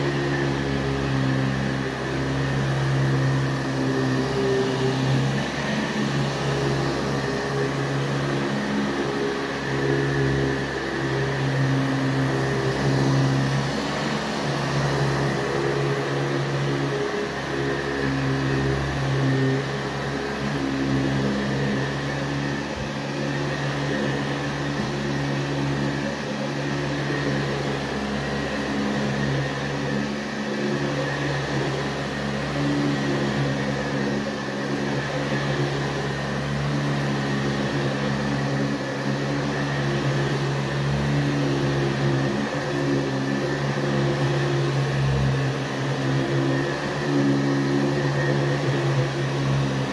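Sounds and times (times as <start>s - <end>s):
vacuum cleaner motor running: 0.0s - 49.9s.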